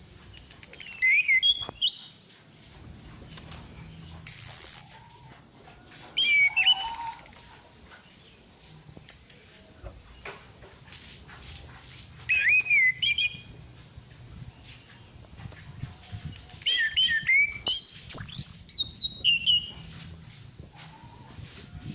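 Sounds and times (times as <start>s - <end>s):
thrush whistles and chirps: 0.1s - 2.2s, 6.2s - 7.5s, 12.3s - 13.5s, 16.1s - 19.9s.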